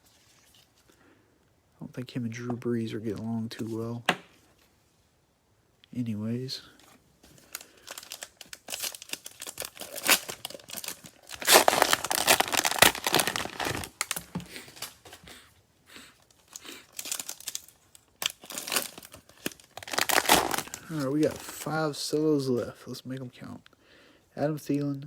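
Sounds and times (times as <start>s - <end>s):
plastic wrapper tearing and crinkling: 7.4s - 15.2s, 16.2s - 21.8s.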